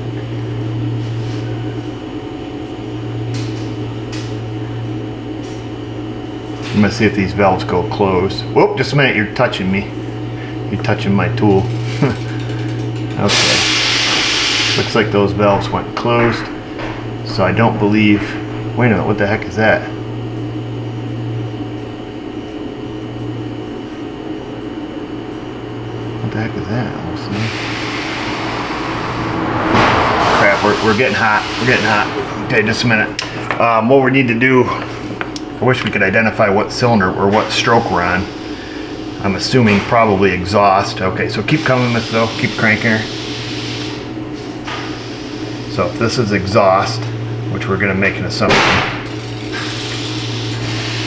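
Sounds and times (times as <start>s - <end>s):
low machine hum: 0.0s - 51.0s
background whoosh: 27.2s - 33.3s.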